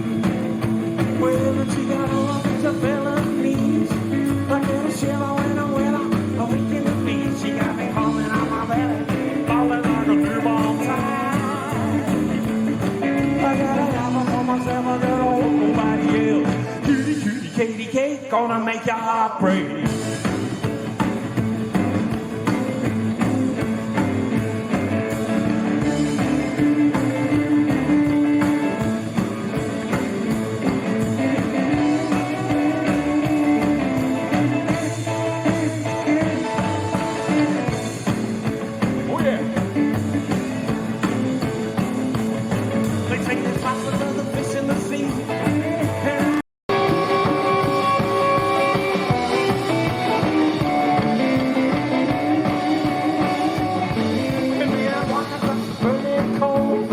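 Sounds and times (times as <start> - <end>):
rock band playing guitar-led song: 0.0 - 56.9.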